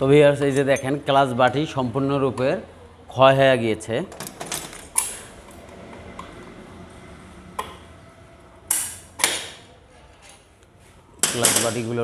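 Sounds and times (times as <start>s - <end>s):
metal parts clinking and knocking: 4.1s - 5.6s.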